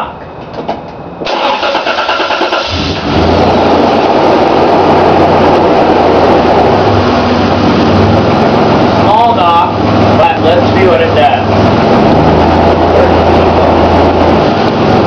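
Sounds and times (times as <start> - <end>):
starter cranking engine: 1.2 - 3.0.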